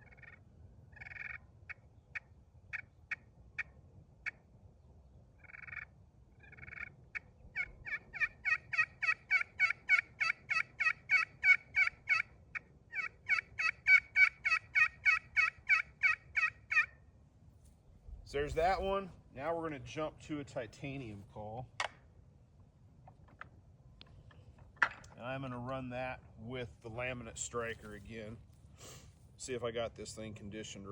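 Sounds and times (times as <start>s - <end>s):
turkey call clucks: 0.0s - 4.4s, 5.4s - 17.0s
turkey call two-tone yelps: 0.0s - 4.4s, 5.4s - 17.0s.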